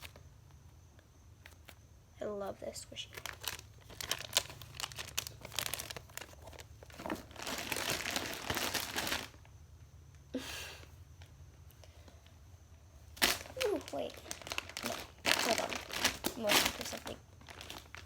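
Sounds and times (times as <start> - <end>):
squishy toys crinkling: 3.1 - 9.4, 13.2 - 18.0.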